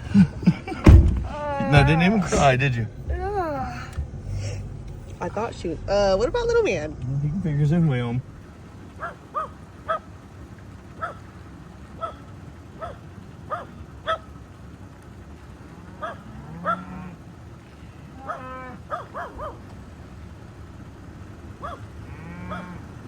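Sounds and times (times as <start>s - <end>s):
lower longer animal call: 18.1s - 19.6s, 21.6s - 23.0s.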